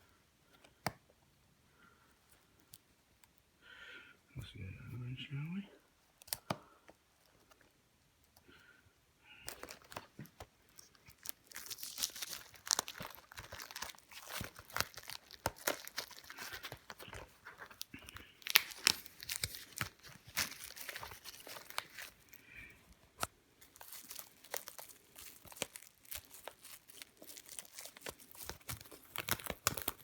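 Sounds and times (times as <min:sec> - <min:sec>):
plastic shrink-wrap crackling: 0:09.4 - 0:30.0.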